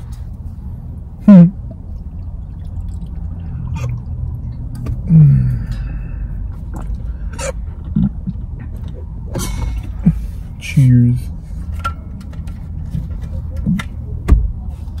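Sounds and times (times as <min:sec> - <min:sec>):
low steady hum: 0:00.0 - 0:15.0
sipping water: 0:01.2 - 0:08.2.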